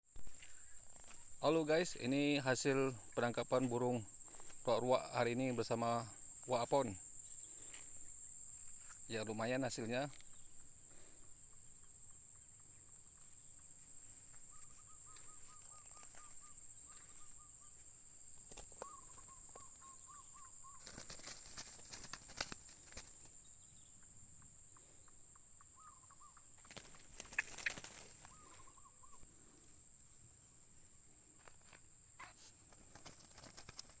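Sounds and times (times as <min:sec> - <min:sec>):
crickets shrilling: 0:00.2 - 0:34.0
bird calling repeated notes: 0:14.4 - 0:17.8, 0:18.7 - 0:21.1, 0:25.6 - 0:26.5, 0:27.2 - 0:29.2
rustling or flapping: 0:20.8 - 0:23.3, 0:26.6 - 0:28.3, 0:31.4 - 0:34.0.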